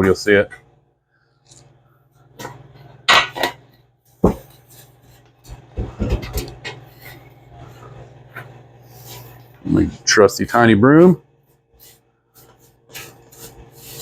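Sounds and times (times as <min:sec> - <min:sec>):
low steady hum: 0:00.0 - 0:14.0
scraping strokes on hard surface: 0:04.4 - 0:05.3, 0:08.8 - 0:09.5, 0:11.5 - 0:14.0.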